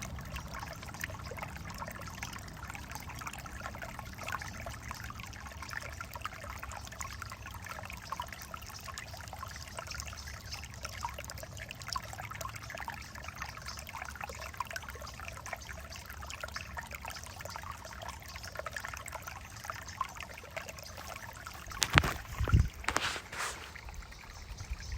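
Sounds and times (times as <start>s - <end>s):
creek water trickling: 0.0s - 24.9s.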